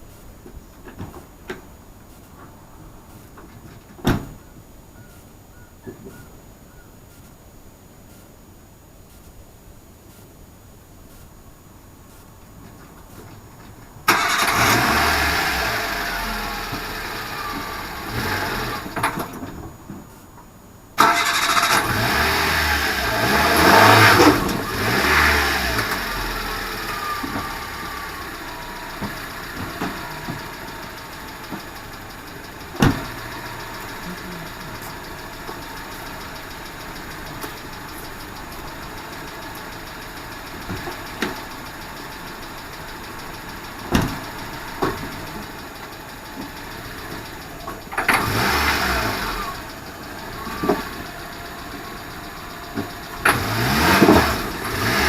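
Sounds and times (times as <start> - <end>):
car engine starting and idling: 14.0 - 19.7, 21.0 - 55.0.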